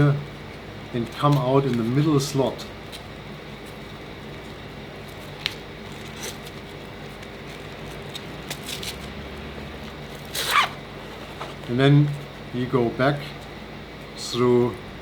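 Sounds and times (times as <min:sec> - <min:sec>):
low room hum: 0:00.0 - 0:15.0
strap clicks and rustles: 0:02.8 - 0:09.2, 0:09.8 - 0:12.2
webbing zipping scrape: 0:10.1 - 0:11.8.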